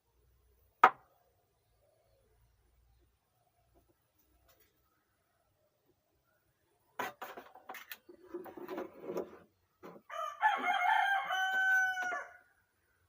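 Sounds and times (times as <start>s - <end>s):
rooster crowing: 10.1s - 12.5s.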